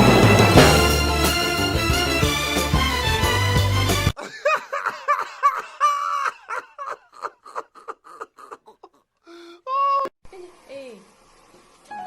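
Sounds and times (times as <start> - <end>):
person giggling: 4.2 - 10.1
high-pitched cry: 9.6 - 10.1.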